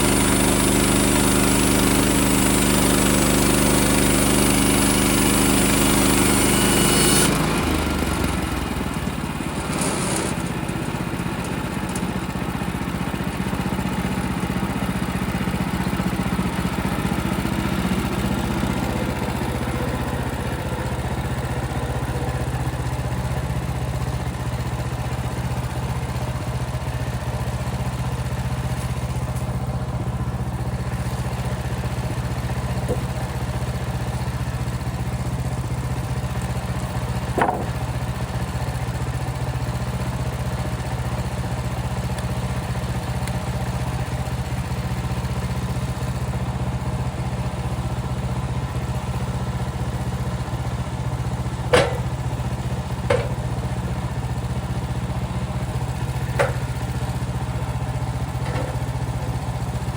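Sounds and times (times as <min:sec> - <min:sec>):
sawmill gas engine running: 0:00.0 - 0:59.9
sharp knocks: 0:37.4 - 0:37.8, 0:51.7 - 0:52.2, 0:53.1 - 0:53.5.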